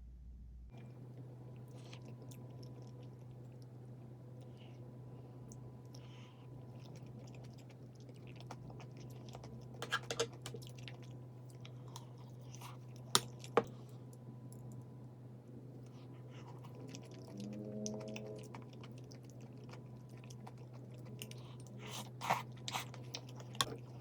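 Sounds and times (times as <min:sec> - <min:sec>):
person chewing food: 0:00.8 - 0:24.0
low hum: 0:10.4 - 0:24.0.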